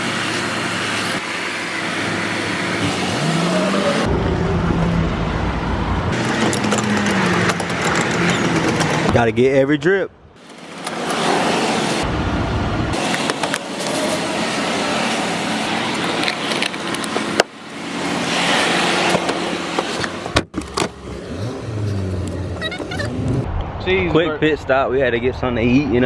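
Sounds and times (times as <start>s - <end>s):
car road noise rushing hiss: 10.4s - 20.3s.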